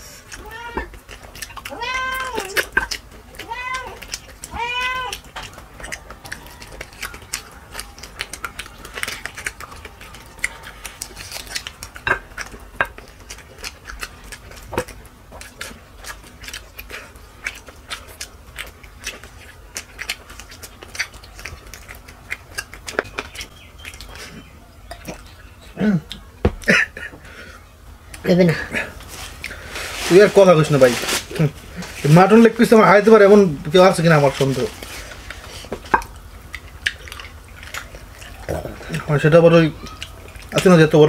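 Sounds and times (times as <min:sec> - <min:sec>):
chewing and biting: 0:00.0 - 0:27.0, 0:28.1 - 0:41.0
cat meowing: 0:00.4 - 0:01.0, 0:01.7 - 0:05.3
cutlery clinking on dishes: 0:12.0 - 0:13.0.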